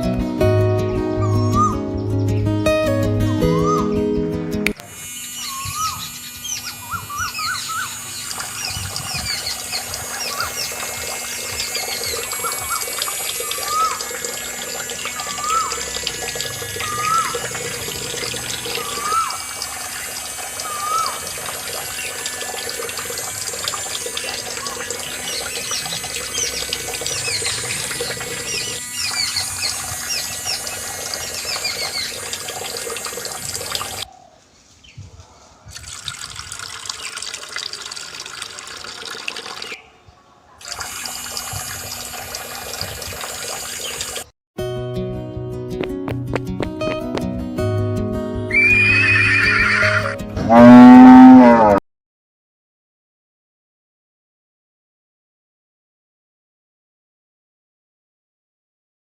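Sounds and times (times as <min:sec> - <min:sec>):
short rising bird call: 0:01.2 - 0:01.8, 0:03.4 - 0:04.0, 0:05.4 - 0:08.0, 0:12.0 - 0:14.0, 0:15.2 - 0:15.9, 0:16.8 - 0:17.4, 0:18.2 - 0:19.4, 0:20.6 - 0:21.2, 0:48.5 - 0:51.4
birds chirping: 0:01.2 - 0:02.6, 0:03.3 - 0:04.2, 0:05.3 - 0:35.8, 0:42.8 - 0:44.3, 0:48.5 - 0:50.1
running water: 0:04.8 - 0:34.1, 0:35.7 - 0:39.9, 0:40.6 - 0:44.3.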